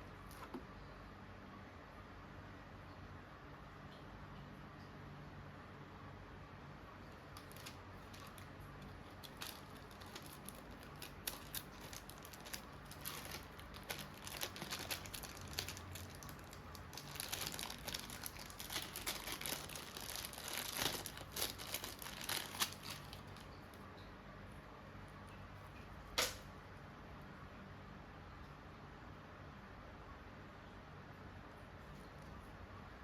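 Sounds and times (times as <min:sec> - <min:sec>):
crisp crackles: 0:07.2 - 0:23.8
packaging crinkling: 0:07.3 - 0:23.6.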